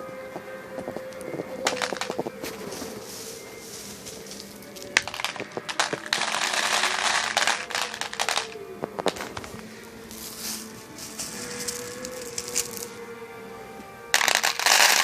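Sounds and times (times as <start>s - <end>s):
dense rapid crackling: 0.3s - 9.7s
sharp cracks: 0.8s - 2.9s, 3.6s - 9.7s, 14.2s - 15.0s.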